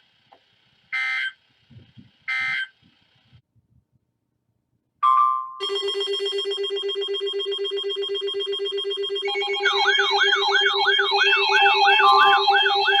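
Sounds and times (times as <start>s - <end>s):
warbling siren-like tone: 7.8s - 13.0s
pulsing buzzing tone: 8.2s - 13.0s.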